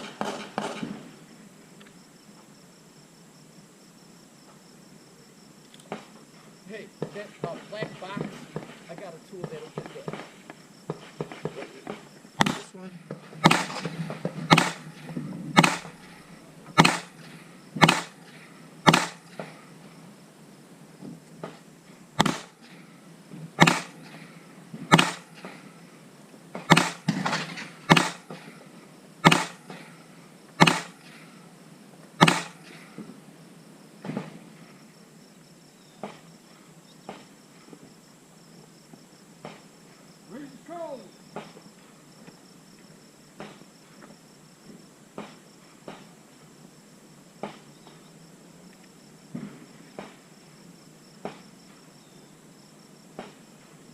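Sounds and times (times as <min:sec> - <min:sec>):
gunshots: 0:00.0 - 0:01.1, 0:11.2 - 0:16.2, 0:16.8 - 0:19.6, 0:22.2 - 0:22.7, 0:23.6 - 0:24.3, 0:24.9 - 0:25.6, 0:26.6 - 0:28.6, 0:29.2 - 0:29.9, 0:30.6 - 0:31.1, 0:32.2 - 0:32.8.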